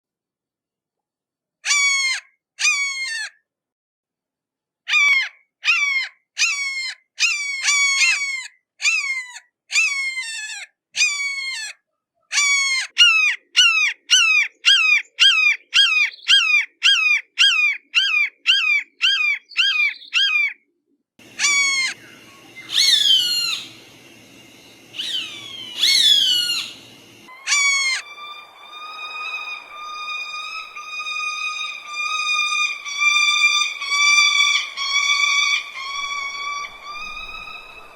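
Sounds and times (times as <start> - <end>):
hawk screaming: 21.2 - 37.9
hissing background: 21.2 - 37.9
steady musical tone: 27.2 - 37.9.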